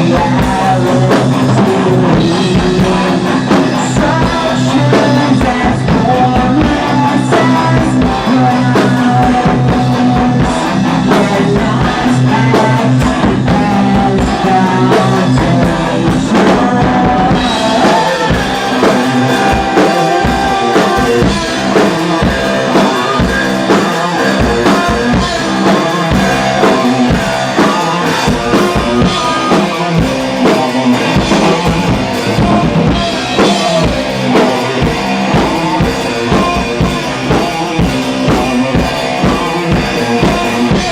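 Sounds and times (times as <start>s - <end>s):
heavy metal band playing: 0.0s - 40.9s
rapid drum strokes: 0.0s - 40.9s.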